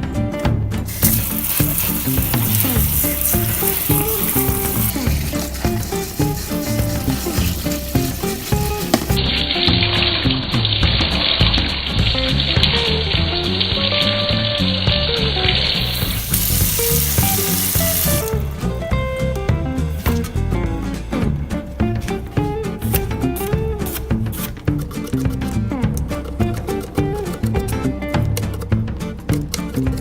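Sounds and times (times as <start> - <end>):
background music: 0.0 - 30.0
steady hiss: 0.9 - 9.2, 15.9 - 18.4.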